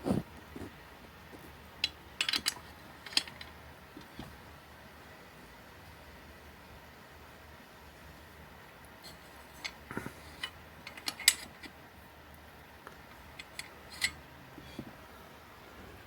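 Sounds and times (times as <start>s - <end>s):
small parts clicking and tapping: 1.3s - 4.3s, 9.0s - 15.0s.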